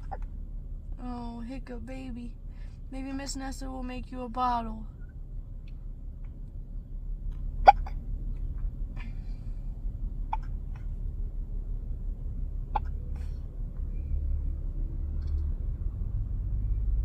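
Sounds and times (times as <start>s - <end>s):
baby hiccuping: 7.6s - 8.0s.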